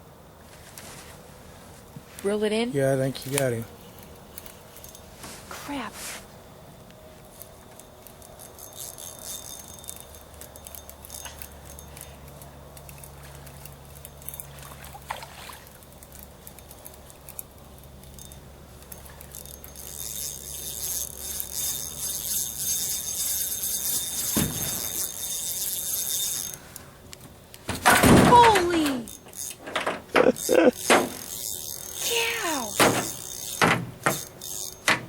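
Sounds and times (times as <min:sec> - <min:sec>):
low steady hum: 0:00.0 - 0:35.0
fishing reel clicking: 0:03.1 - 0:05.0, 0:07.3 - 0:26.8, 0:28.7 - 0:29.6, 0:30.4 - 0:34.9.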